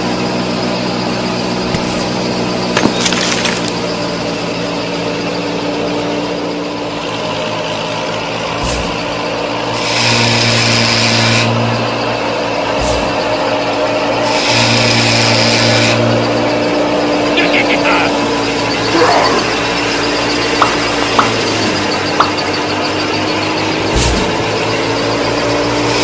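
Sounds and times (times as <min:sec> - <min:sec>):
low thumps: 0:12.7 - 0:13.5, 0:23.8 - 0:25.1.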